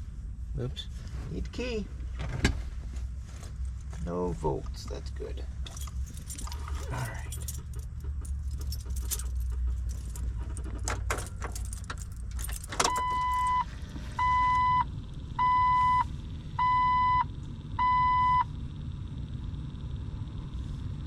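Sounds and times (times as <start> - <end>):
keys jangling: 5.6 - 13.5
car warning chime beeps: 12.8 - 18.5.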